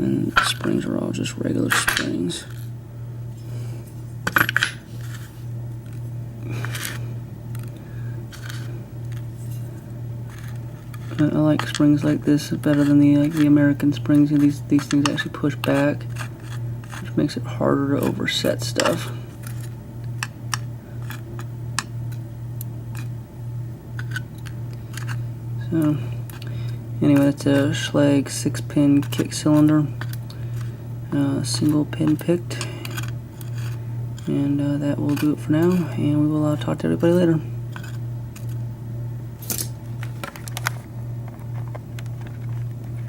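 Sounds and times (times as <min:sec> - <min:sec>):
low hum: 0:00.0 - 0:43.0
small metal parts scraping: 0:04.2 - 0:05.4, 0:06.6 - 0:07.7, 0:08.3 - 0:17.4, 0:18.0 - 0:20.3, 0:21.0 - 0:21.5, 0:24.0 - 0:25.2, 0:28.6 - 0:30.8, 0:31.5 - 0:34.4, 0:35.0 - 0:35.9, 0:37.7 - 0:38.6.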